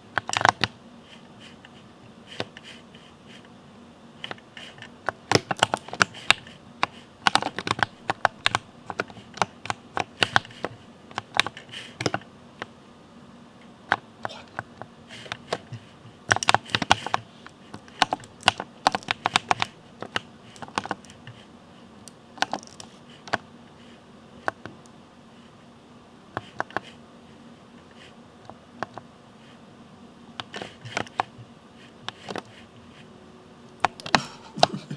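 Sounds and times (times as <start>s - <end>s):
mechanical keyboard typing: 0.1s - 0.8s, 4.2s - 12.3s, 15.3s - 17.2s, 17.8s - 21.4s, 22.1s - 23.4s, 30.4s - 31.4s.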